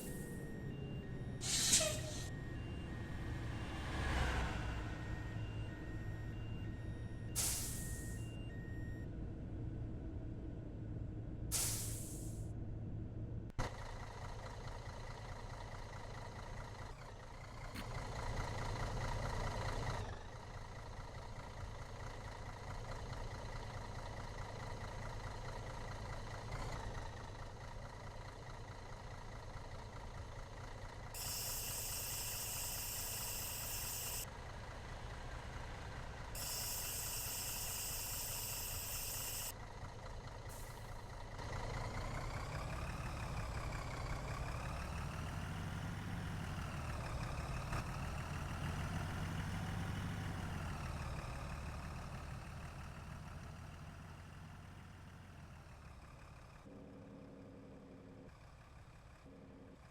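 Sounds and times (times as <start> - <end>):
vehicle engine running: 0.0 - 59.9
hissing bursts: 1.4 - 2.2.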